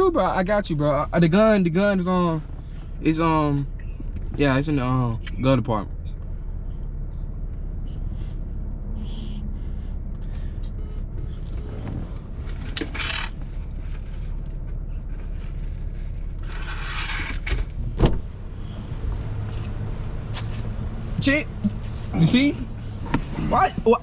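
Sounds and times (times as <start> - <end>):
car cabin hum: 9.5 - 24.0.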